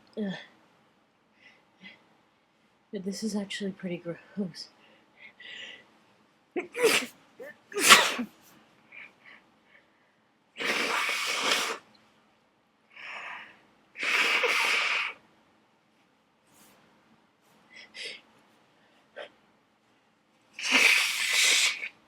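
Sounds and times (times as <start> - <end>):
noisy breathing: 4.8 - 5.9
person sneezing: 6.6 - 8.4, 10.6 - 11.8, 14.0 - 15.2, 20.6 - 22.0.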